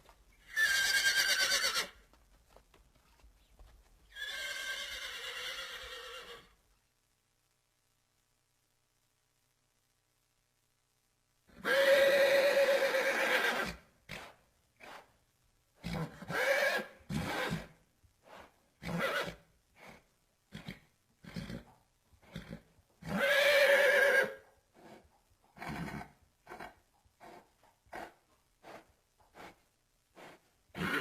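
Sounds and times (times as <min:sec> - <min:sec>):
horse neighing: 0:00.4 - 0:02.0, 0:04.1 - 0:06.5, 0:20.5 - 0:24.4, 0:25.6 - 0:26.8, 0:30.7 - 0:31.0.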